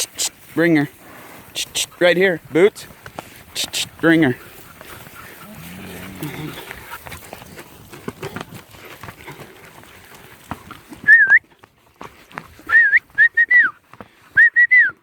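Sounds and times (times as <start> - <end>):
person whistling commands: 11.0 - 11.4, 12.7 - 13.8, 14.4 - 15.0.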